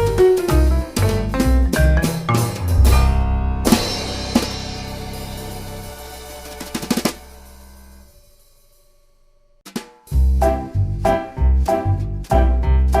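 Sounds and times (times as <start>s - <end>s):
drum-led music: 0.0s - 8.2s, 9.6s - 11.1s.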